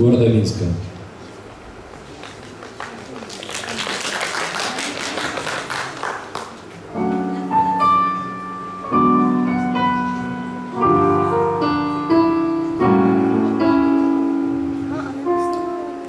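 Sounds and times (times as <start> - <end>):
slow blues piano chords: 6.6 - 16.0.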